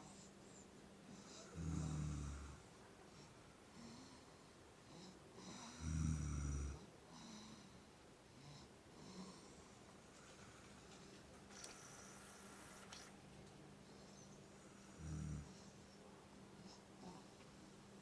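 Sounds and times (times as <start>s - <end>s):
person snoring: 14.8s - 15.7s.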